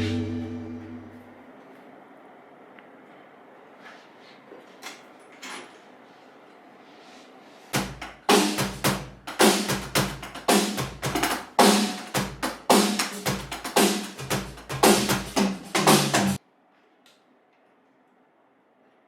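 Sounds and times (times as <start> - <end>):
electronic drum kit playing: 0.0 - 1.2, 7.8 - 16.4.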